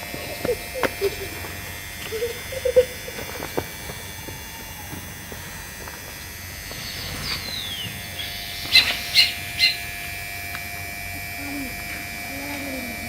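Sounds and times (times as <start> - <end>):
faint high hum: 0.0 - 13.0
sharp bird chirps: 6.7 - 10.0
bird falling whistle: 6.8 - 9.9.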